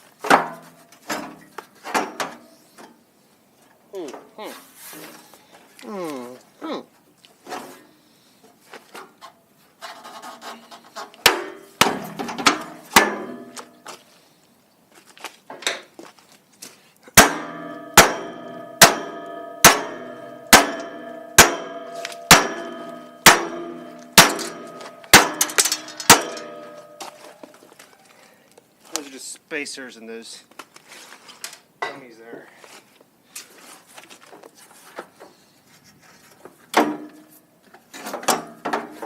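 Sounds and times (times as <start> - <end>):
hammer striking metal frame: 11.2 - 13.8, 17.2 - 27.5.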